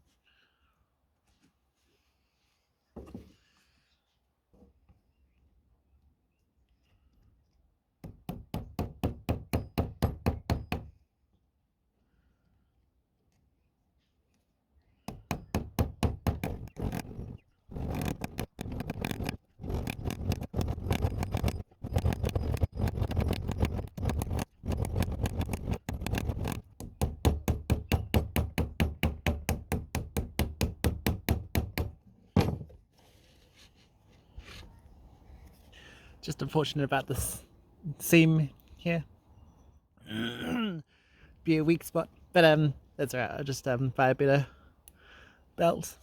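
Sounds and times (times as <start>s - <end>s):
rapid sharp knocking: 15.3s - 31.9s.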